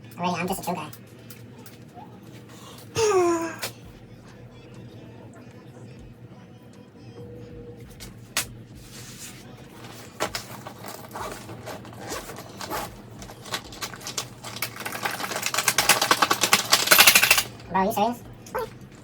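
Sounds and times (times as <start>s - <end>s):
zipper being pulled: 8.9s - 14.2s.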